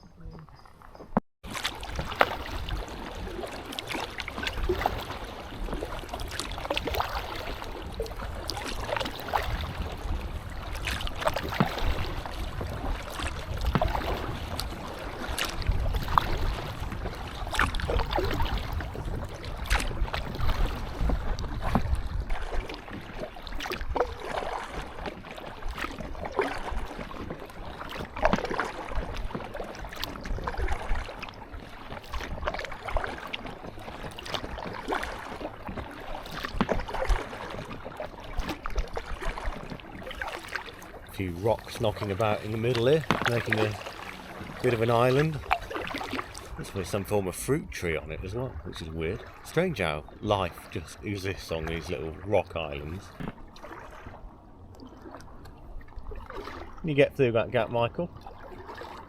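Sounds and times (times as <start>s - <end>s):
paddle splashing in water: 0.0s - 59.0s
water sloshing against kayak hull: 0.0s - 59.0s
wind buffeting microphone: 1.9s - 25.2s, 41.0s - 53.2s.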